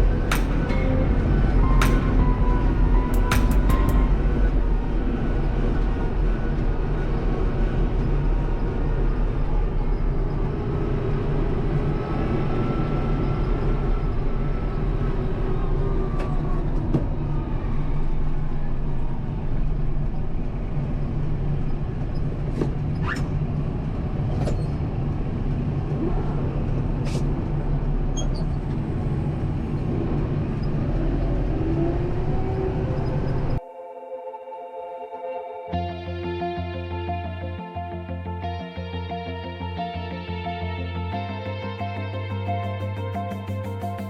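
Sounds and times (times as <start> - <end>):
sharp clicks and knocks: 0.0 - 4.4
tractor diesel engine running: 0.0 - 7.5.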